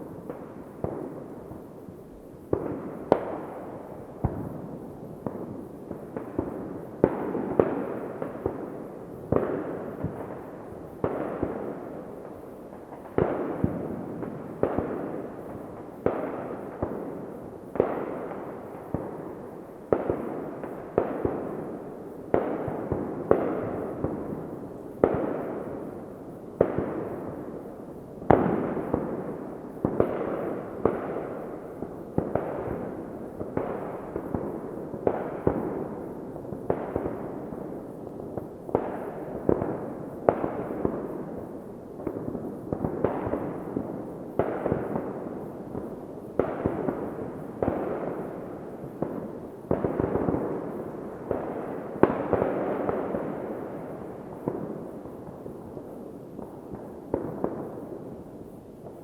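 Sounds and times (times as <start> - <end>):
fireworks bangs with rolling echo: 0.0 - 59.0.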